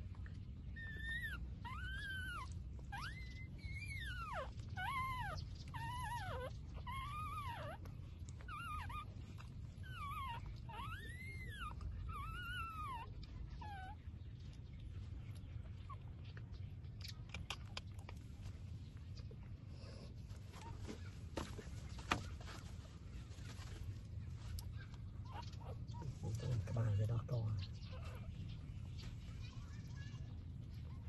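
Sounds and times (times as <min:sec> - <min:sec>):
low steady rumble: 0:00.0 - 0:31.0
puppy whining: 0:00.1 - 0:18.3, 0:24.1 - 0:27.0, 0:27.6 - 0:31.0.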